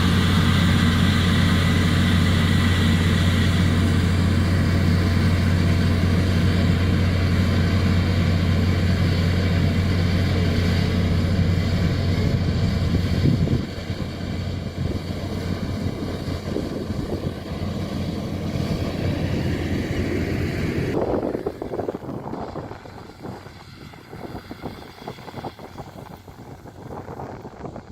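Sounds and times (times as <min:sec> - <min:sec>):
bulldozer diesel engine running: 0:00.0 - 0:27.9.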